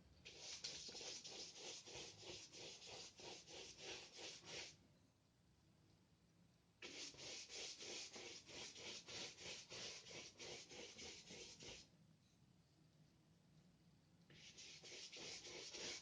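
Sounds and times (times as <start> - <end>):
paintbrush strokes on paper: 0.3 - 4.8, 6.8 - 11.9, 14.3 - 16.0.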